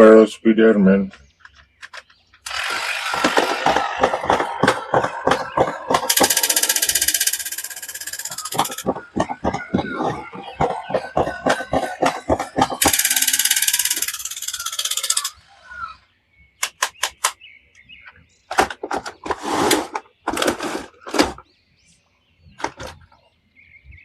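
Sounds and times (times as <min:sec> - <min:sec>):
sharp clicks of toys: 0:01.5 - 0:10.2, 0:10.9 - 0:15.4, 0:16.6 - 0:17.4
fast even rattle: 0:02.4 - 0:15.4.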